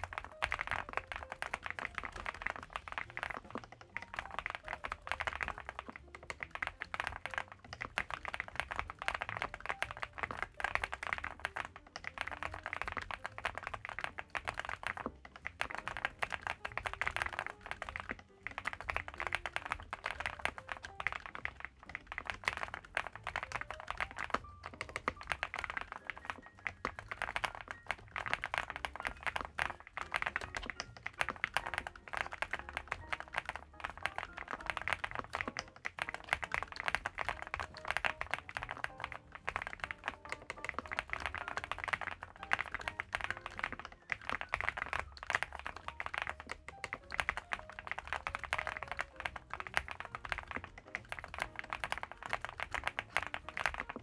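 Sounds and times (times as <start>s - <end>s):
fast mechanical keyboard typing: 0.0s - 54.0s.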